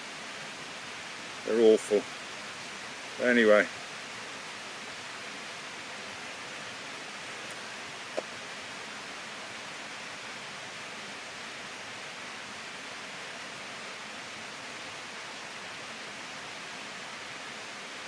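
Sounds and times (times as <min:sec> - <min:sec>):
waterfall rushing: 0:00.0 - 0:18.0.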